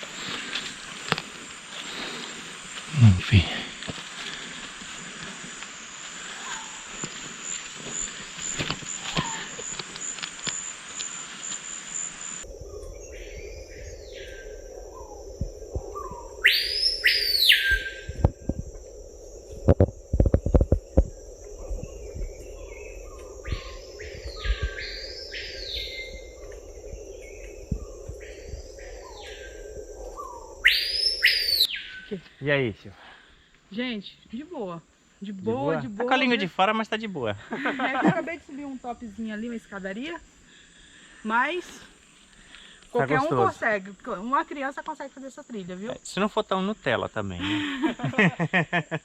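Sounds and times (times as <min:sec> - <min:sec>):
high insect drone: 0:00.0 - 0:49.0
whistled bird calls: 0:16.0 - 0:18.1, 0:22.6 - 0:26.3, 0:30.2 - 0:32.2.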